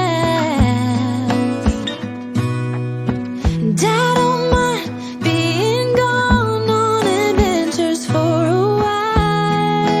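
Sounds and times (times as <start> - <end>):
song with bass and beat: 0.0 - 8.0.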